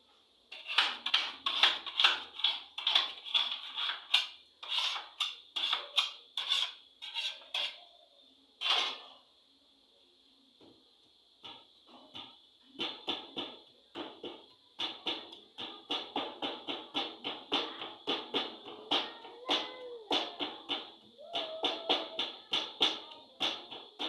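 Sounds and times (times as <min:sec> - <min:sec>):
metal bakeware clattering: 0:00.5 - 0:07.8, 0:08.6 - 0:09.2.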